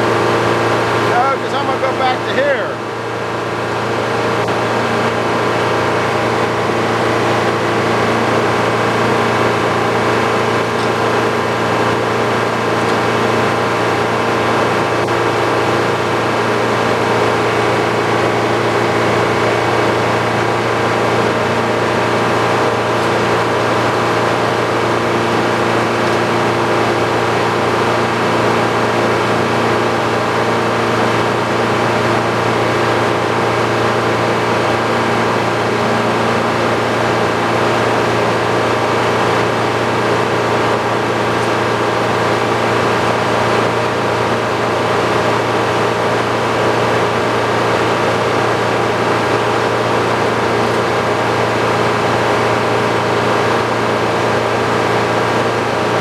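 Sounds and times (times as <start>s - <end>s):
sawmill power unit humming: 0.0s - 56.0s.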